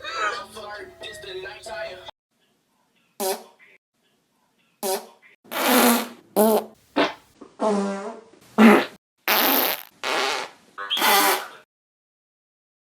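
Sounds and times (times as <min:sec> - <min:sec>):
short farts: 0:04.8 - 0:11.6.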